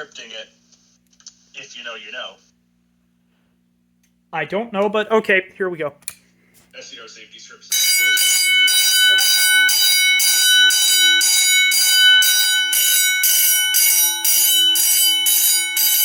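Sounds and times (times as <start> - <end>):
fire alarm bell ringing: 7.7 - 16.0.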